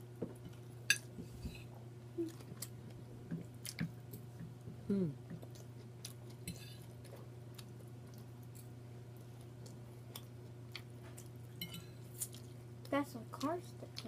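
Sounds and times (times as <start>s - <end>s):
steady low hum: 0.0s - 14.0s
chewing and mouth smacks: 5.3s - 11.4s.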